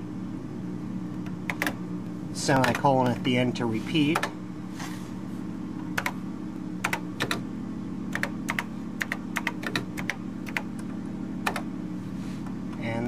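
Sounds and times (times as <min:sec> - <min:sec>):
steady low hum: 0:00.0 - 0:13.0
keyboard keys clicking: 0:01.5 - 0:01.8, 0:06.0 - 0:06.2, 0:06.8 - 0:07.4, 0:08.1 - 0:11.7.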